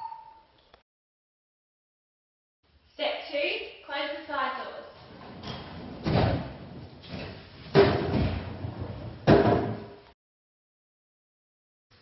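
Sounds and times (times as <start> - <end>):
heavy door slams: 5.2 - 10.0.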